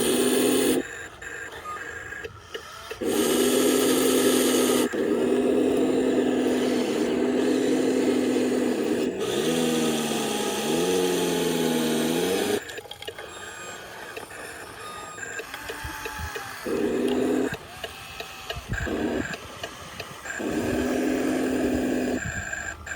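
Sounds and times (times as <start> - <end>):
electric motors whining: 0.0 - 22.9
faint ticking: 10.9 - 22.9.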